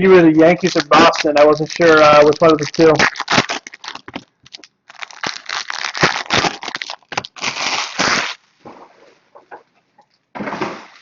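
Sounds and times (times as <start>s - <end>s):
foil wrappers crinkling and tearing: 0.1s - 8.4s.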